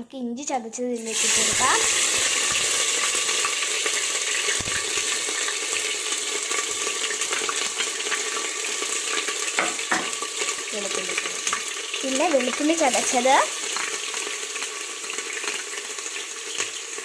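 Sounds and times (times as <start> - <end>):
ginger sizzling in hot oil: 0.8 - 17.0
spoon stirring and tapping pot: 9.5 - 10.2.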